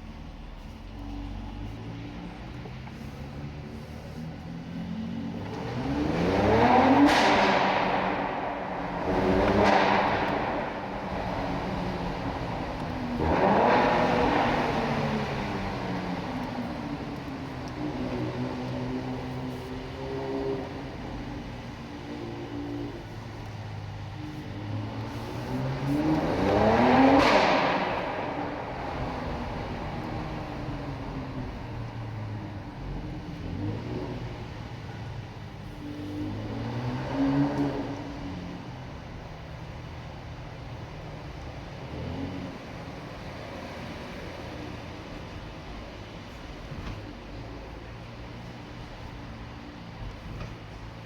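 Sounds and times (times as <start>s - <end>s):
car exhaust revving: 5.1s - 21.8s, 24.8s - 34.8s
exhaust crack: 6.4s - 19.5s, 25.1s - 33.3s.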